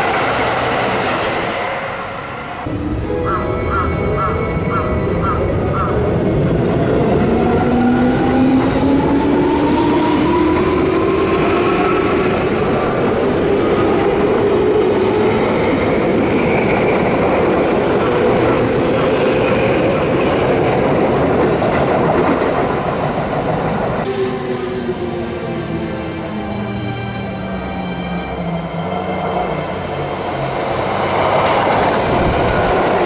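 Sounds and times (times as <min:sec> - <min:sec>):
train wheels on rails: 0:05.3 - 0:26.6, 0:29.1 - 0:33.0.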